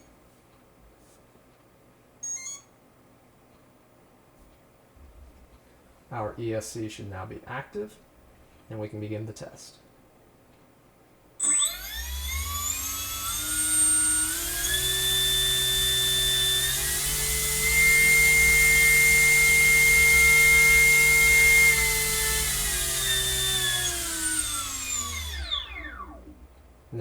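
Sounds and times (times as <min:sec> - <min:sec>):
electric propeller motor whine: 0:11.4 - 0:26.6.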